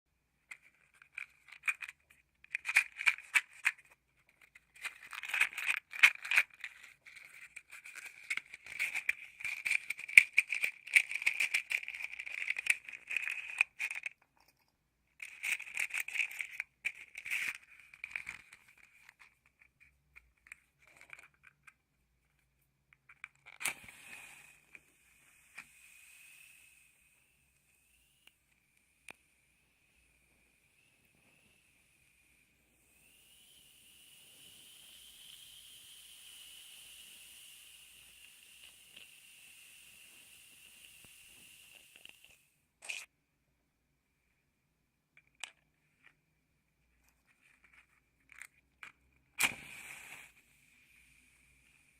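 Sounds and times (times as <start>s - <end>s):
matches rattling in a matchbox: 0.5s - 22.4s
match striking and hissing: 23.4s - 43.1s, 49.4s - 51.9s.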